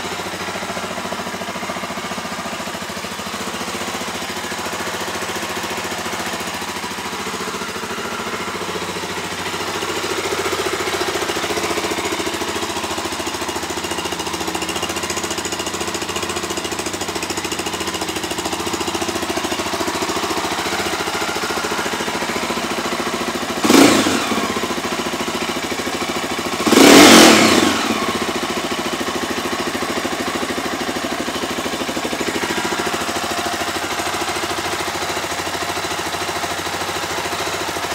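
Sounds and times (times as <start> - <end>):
engine idling: 0.0 - 37.9
loud engine bursts: 23.6 - 24.6, 26.6 - 28.2.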